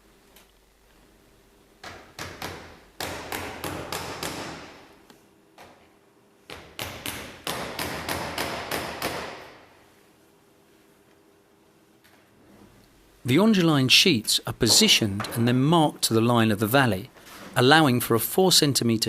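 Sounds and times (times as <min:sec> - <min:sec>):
hammer striking nails: 0:01.8 - 0:04.8, 0:06.5 - 0:09.6.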